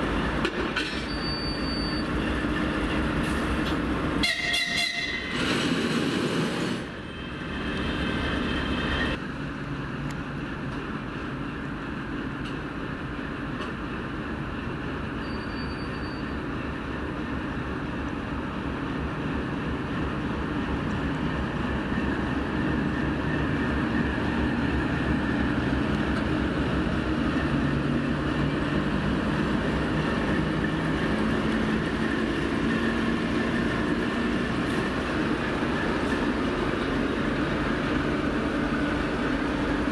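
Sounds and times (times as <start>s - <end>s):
locomotive horn: 4.2s - 5.4s.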